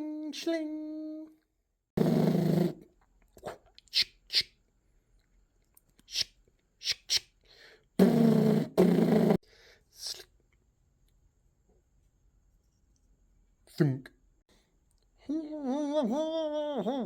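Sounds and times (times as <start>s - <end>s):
hissing sh and tss mouth noises: 2.0s - 4.6s, 6.0s - 7.4s, 8.0s - 10.3s.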